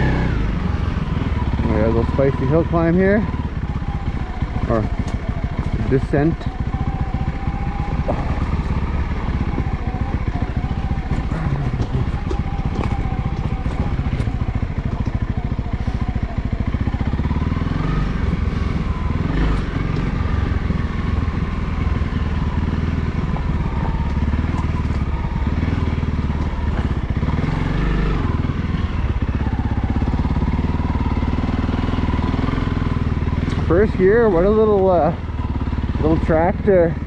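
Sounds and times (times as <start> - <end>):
motorcycle engine running: 0.0 - 37.0.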